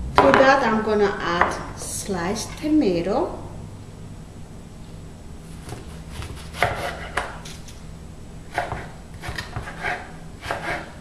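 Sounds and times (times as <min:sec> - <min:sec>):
knife chopping tomato on board: 0:05.6 - 0:07.4, 0:08.5 - 0:10.9.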